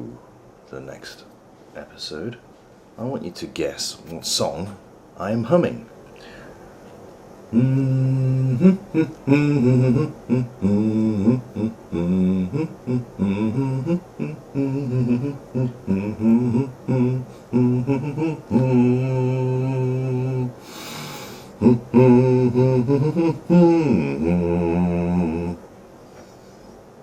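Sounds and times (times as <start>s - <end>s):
person humming a tune: 7.5s - 25.6s.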